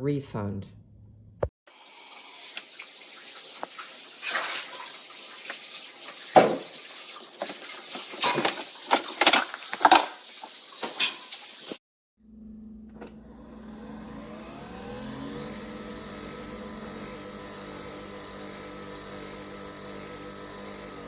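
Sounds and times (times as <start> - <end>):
coffee machine sputtering water: 1.7 - 11.8.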